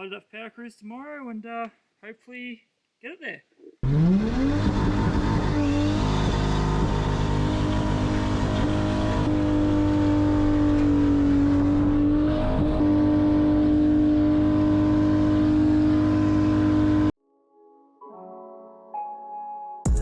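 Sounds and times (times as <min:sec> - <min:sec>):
car engine revving high: 0:03.8 - 0:17.1.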